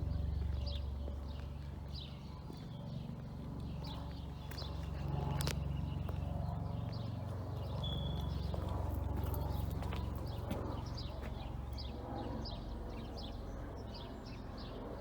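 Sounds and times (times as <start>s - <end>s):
footsteps of people walking: 0.0s - 12.0s
small birds chirping: 0.0s - 15.0s
steady low rumble: 0.0s - 15.0s.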